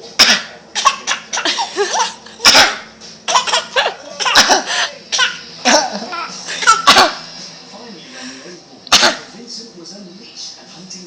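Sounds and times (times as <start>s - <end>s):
child forced coughing: 0.2s - 5.4s, 6.6s - 7.2s, 8.9s - 9.3s.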